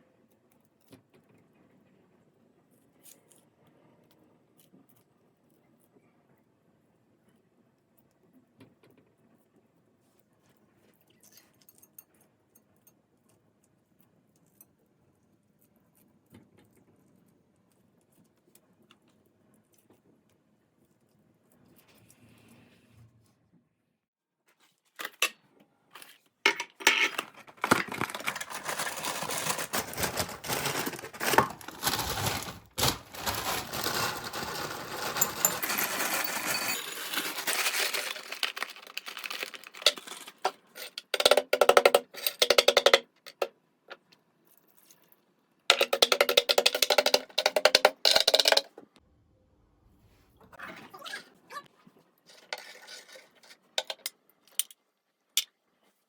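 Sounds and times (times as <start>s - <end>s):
kitchen utensils crackling and clicking: 26.0s - 43.5s, 45.7s - 48.7s, 52.3s - 54.8s.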